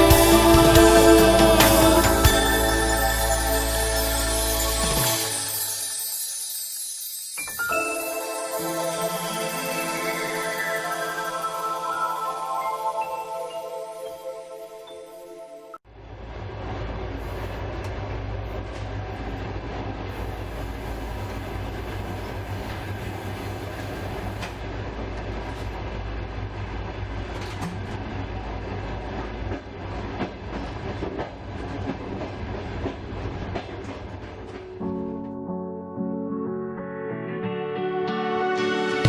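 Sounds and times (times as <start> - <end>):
train rumbling on track: 0.0 - 5.2, 16.0 - 35.2.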